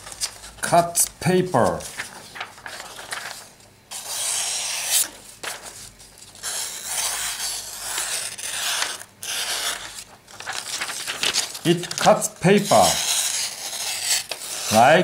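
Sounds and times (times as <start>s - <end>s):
knife slicing through paper: 6.4s - 15.0s.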